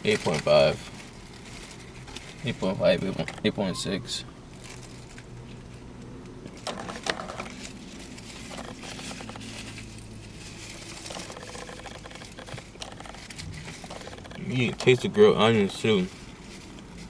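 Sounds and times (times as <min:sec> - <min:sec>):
low steady hum: 0:00.0 - 0:17.0
mouth clicks and crackles: 0:11.0 - 0:15.0.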